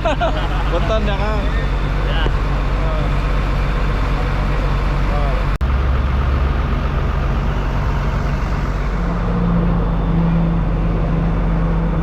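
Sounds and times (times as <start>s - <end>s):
road noise: 0.0s - 12.0s
vehicle engine running: 0.0s - 12.0s.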